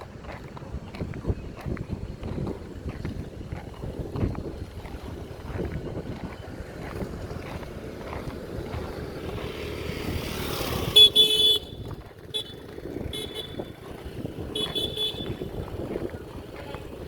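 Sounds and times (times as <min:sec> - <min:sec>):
road traffic: 0:00.0 - 0:17.0
vehicle passing: 0:02.2 - 0:17.0
vehicle horn honking: 0:10.9 - 0:13.8, 0:14.5 - 0:15.6, 0:16.6 - 0:17.0.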